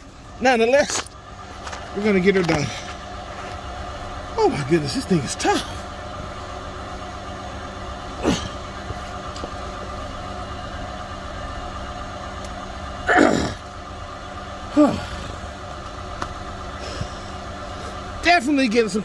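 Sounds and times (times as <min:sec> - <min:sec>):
steady mechanical hum: 0:00.0 - 0:19.0
man grunting with effort: 0:05.4 - 0:05.8, 0:08.1 - 0:08.7, 0:13.0 - 0:13.7, 0:14.7 - 0:15.5.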